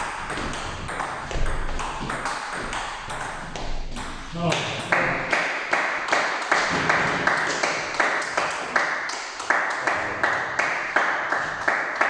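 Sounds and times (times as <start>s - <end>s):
person clapping hands: 4.5s - 12.0s.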